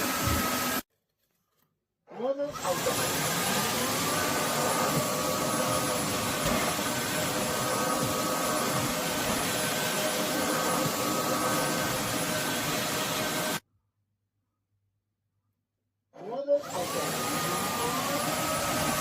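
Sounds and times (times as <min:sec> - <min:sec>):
vacuum mop running: 0:00.0 - 0:00.8, 0:02.5 - 0:13.6, 0:16.6 - 0:19.0.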